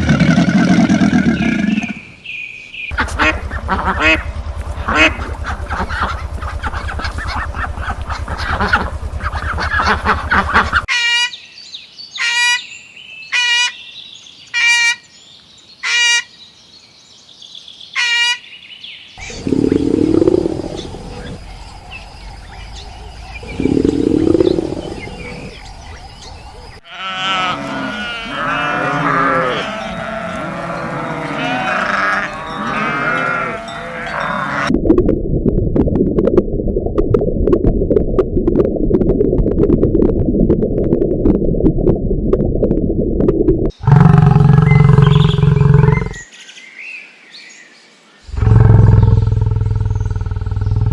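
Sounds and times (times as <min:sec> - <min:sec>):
low animal calls: 0:02.9 - 0:10.9, 0:19.2 - 0:34.7, 0:43.8 - 0:46.2, 0:48.3 - 0:50.9
many animals calling: 0:02.9 - 0:11.3, 0:19.2 - 0:34.7, 0:43.8 - 0:46.3.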